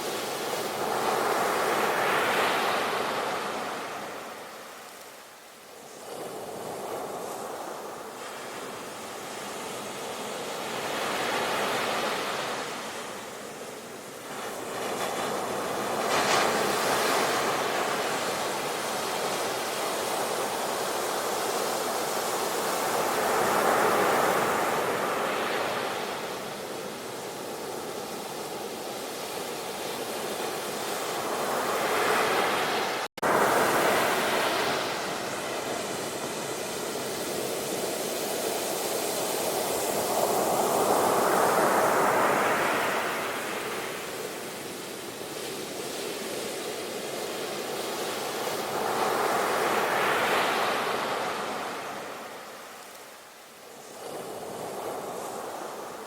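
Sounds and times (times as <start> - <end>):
wind: 0.0 - 56.0
ocean waves breaking: 14.2 - 46.4.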